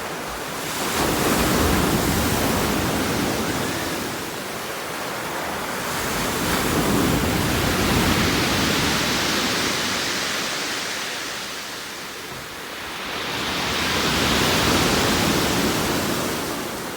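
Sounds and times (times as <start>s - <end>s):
sea waves breaking: 0.0s - 16.9s.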